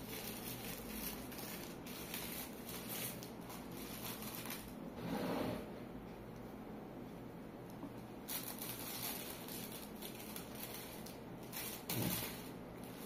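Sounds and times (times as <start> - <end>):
packaging rustling and scraping: 0.0 - 5.2, 8.2 - 13.0.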